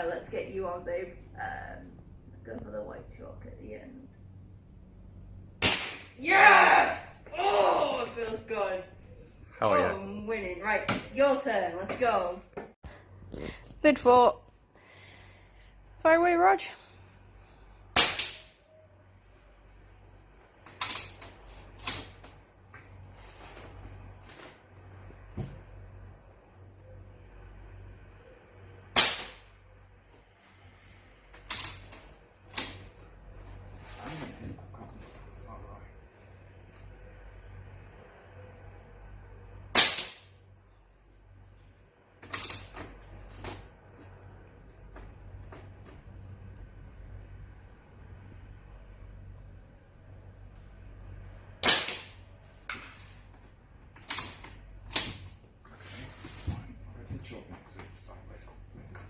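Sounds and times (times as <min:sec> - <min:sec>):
air rifle shot: 0:05.6 - 0:06.2, 0:51.6 - 0:52.2.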